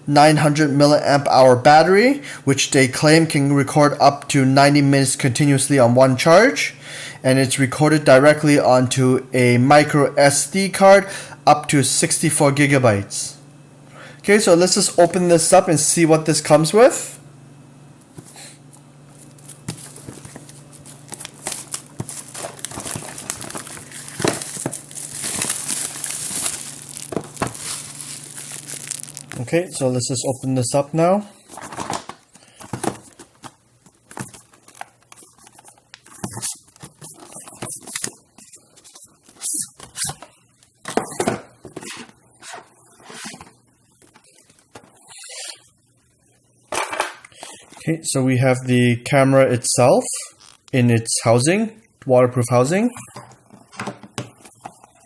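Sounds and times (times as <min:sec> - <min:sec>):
plastic and paper packaging crinkling: 0:19.1 - 0:30.5, 0:31.4 - 0:45.0.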